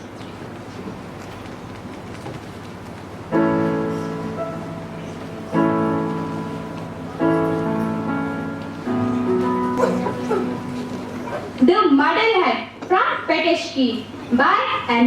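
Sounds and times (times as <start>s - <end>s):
keyboard chords ringing: 3.3s - 11.6s.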